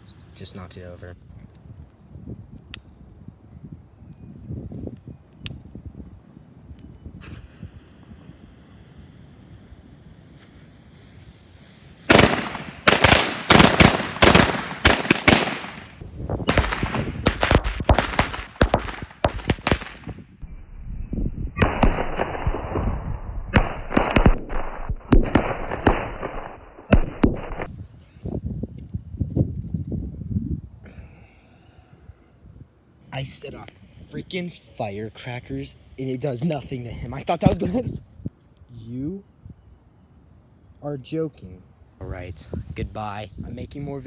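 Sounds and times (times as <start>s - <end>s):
firecrackers crackling: 7.2s - 20.1s.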